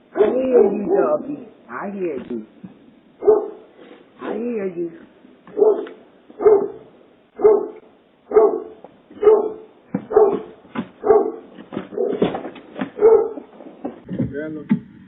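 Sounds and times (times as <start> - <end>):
dog barking: 0.1 - 1.6, 3.2 - 4.5, 5.5 - 13.6.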